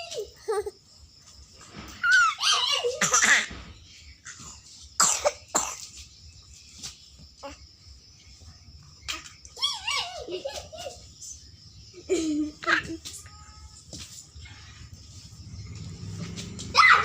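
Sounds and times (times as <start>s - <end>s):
child squealing and laughing: 2.0s - 3.5s, 9.6s - 11.2s, 16.7s - 17.0s
child coughing: 2.9s - 3.5s, 5.0s - 5.9s.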